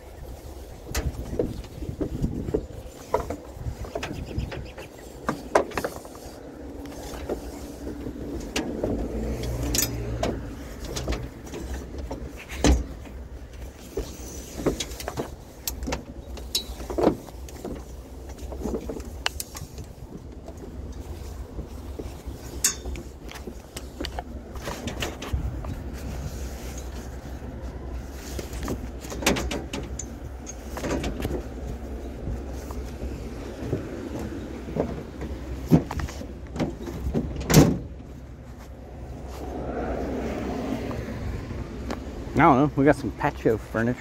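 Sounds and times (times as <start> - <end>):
vehicle engine and road rumble: 0.0 - 44.0
knocks and rattles: 28.1 - 31.8.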